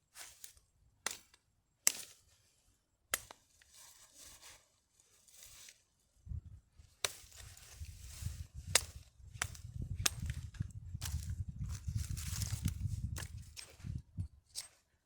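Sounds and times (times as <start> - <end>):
blade chopping wood: 8.7 - 11.3.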